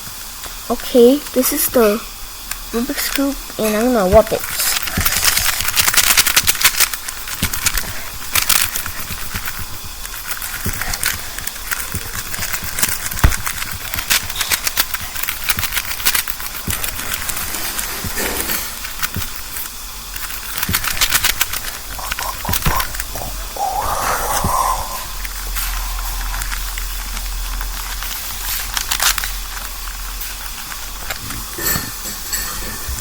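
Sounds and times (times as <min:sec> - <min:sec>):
plastic cube clicking and tapping: 0:04.5 - 0:17.5, 0:18.8 - 0:23.3.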